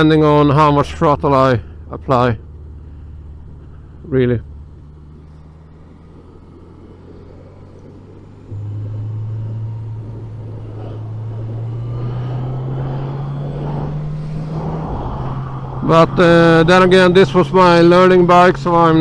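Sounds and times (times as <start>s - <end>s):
motorcycle engine accelerating: 0.0s - 19.0s
wind noise: 7.6s - 17.8s.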